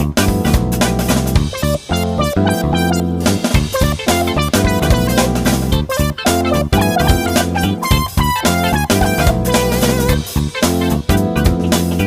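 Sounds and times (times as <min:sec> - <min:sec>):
upbeat guitar and keyboard music: 0:00.0 - 0:12.0.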